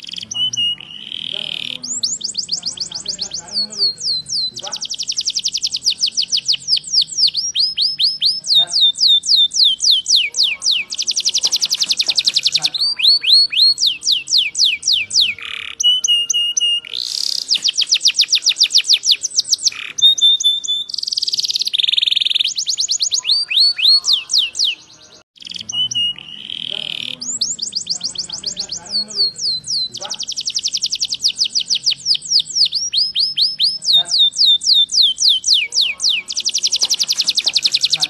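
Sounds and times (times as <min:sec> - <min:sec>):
canary singing trills: 0:00.0 - 0:38.0.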